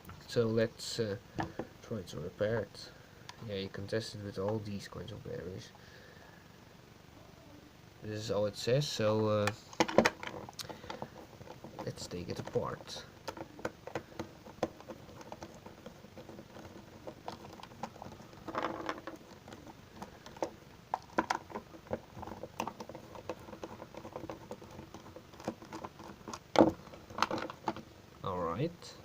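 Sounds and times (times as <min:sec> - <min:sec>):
scraping rustle: 0:09.6 - 0:28.0.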